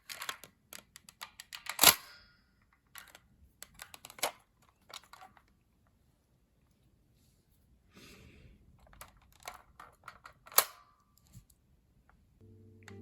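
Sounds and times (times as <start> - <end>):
plastic toy clicks and snaps: 0.0 - 2.1.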